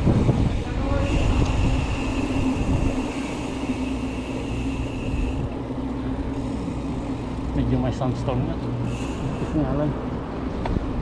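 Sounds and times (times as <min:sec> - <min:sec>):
wind buffeting microphone: 0:00.0 - 0:11.0
steady hum: 0:00.1 - 0:11.0
thin high whine: 0:00.6 - 0:08.0, 0:08.7 - 0:10.0.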